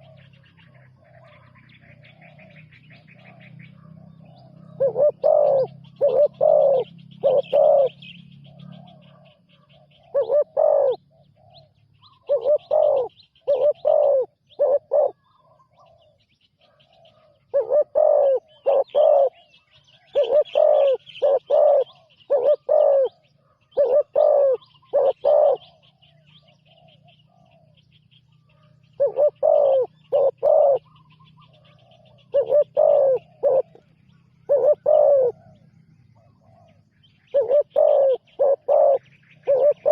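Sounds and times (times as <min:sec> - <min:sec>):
dove cooing: 0:00.0 - 0:27.8, 0:28.5 - 0:39.9.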